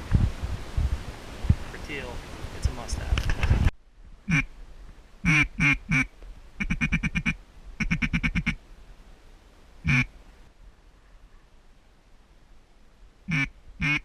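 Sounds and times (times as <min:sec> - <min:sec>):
duck quacking: 0:04.3 - 0:04.5, 0:05.2 - 0:08.6, 0:09.8 - 0:10.1, 0:13.3 - 0:14.0.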